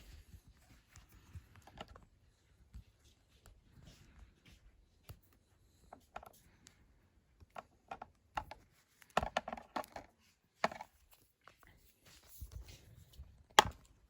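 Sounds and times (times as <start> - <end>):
box contents clicking and knocking: 7.5 - 11.0.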